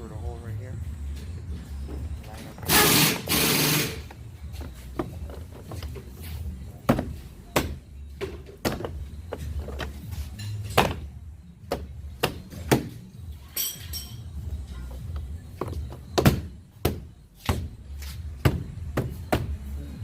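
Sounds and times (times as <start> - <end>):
door panel knocks and thuds: 6.8 - 10.0, 15.6 - 17.7.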